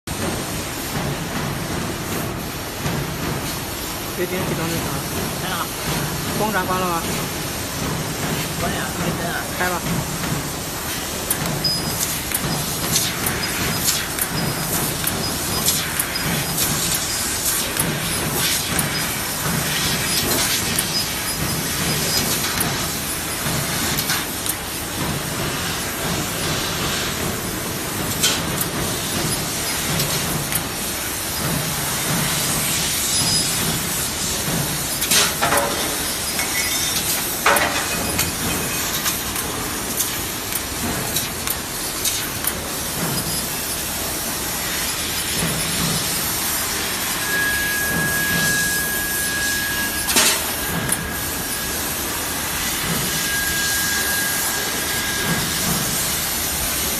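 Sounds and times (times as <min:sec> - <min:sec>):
laser cutter hissing: 0:00.4 - 0:56.9
short high beep: 0:47.2 - 0:51.5.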